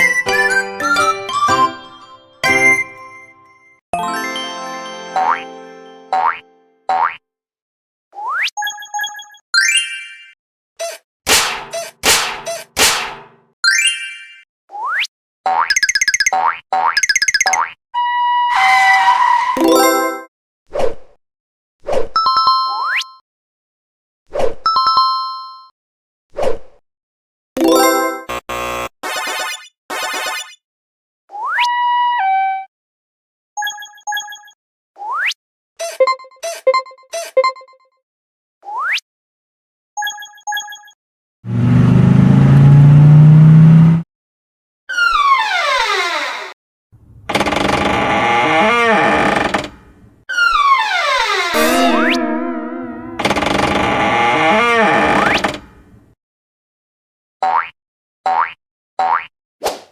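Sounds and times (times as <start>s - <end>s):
springy cartoon boing: 51.6s - 53.2s.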